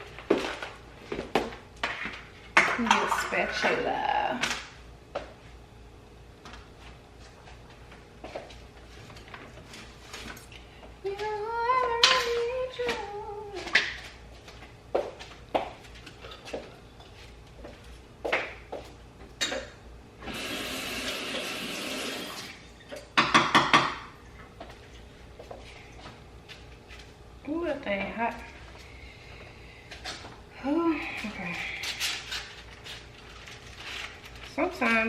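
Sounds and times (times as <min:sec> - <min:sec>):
person humming: 0:11.0 - 0:13.7.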